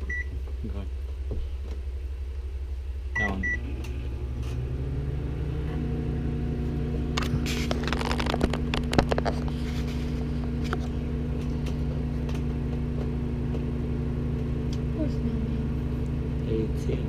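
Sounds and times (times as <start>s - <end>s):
microwave oven humming: 0.0s - 17.0s
crackles and sharp clicks: 7.1s - 9.6s.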